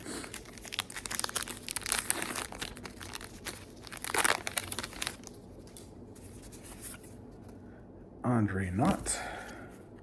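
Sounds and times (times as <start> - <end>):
card pack wrapper crinkling: 0.0 - 7.0.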